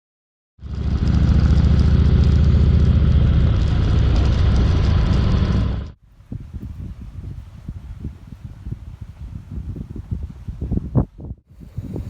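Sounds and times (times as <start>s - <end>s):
motorcycle engine running: 0.6s - 6.0s
faint wind noise: 3.3s - 12.0s.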